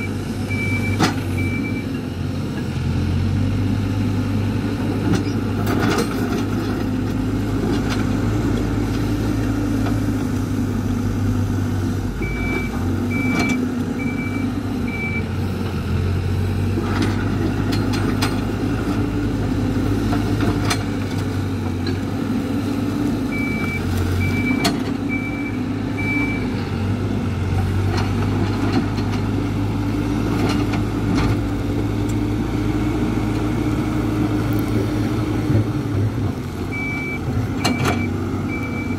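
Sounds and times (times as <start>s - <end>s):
reversing alarm beeps: 0.0s - 1.9s, 12.2s - 15.3s, 23.3s - 26.4s, 36.7s - 38.9s
backhoe diesel engine running: 0.0s - 38.9s.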